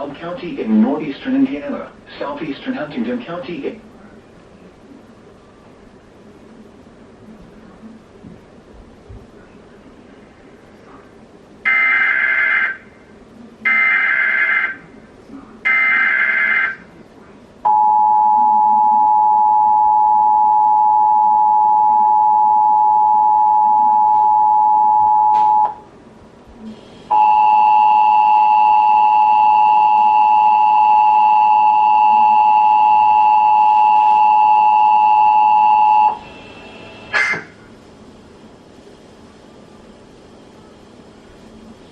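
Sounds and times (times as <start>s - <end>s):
two-tone attention signal: 17.7s - 25.8s, 27.1s - 37.5s.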